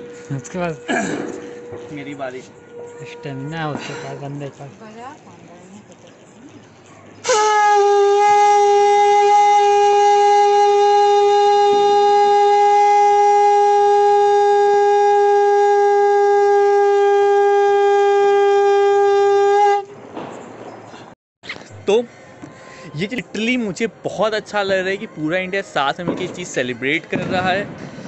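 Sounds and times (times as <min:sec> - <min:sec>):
conch shell blown: 0:00.0 - 0:04.8, 0:07.2 - 0:20.0.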